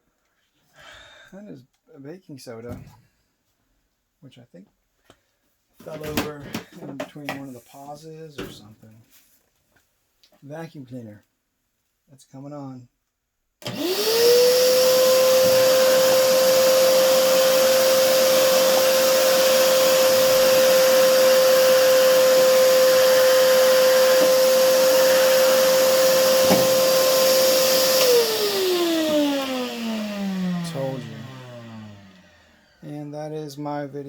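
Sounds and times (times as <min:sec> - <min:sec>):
vacuum cleaner motor whine: 0:13.6 - 0:32.8.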